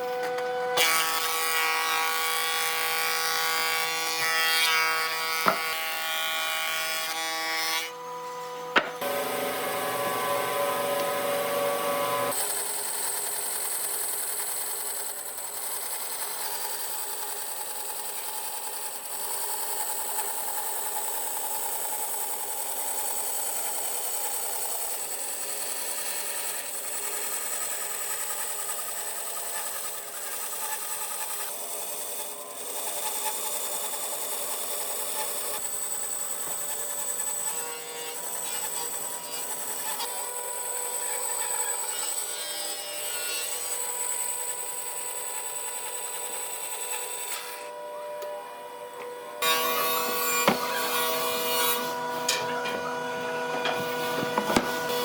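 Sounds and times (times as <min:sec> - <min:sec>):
tool grinding wood: 0:00.0 - 0:55.0
power tool motor whining: 0:07.9 - 0:18.6, 0:43.5 - 0:55.0.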